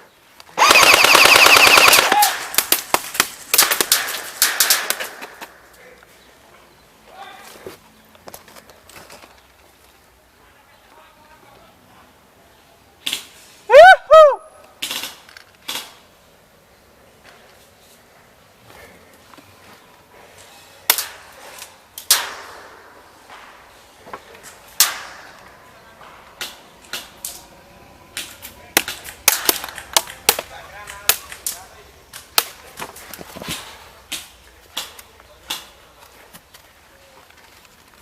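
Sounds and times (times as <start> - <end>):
airsoft guns firing: 0.6 - 5.5, 28.2 - 31.6.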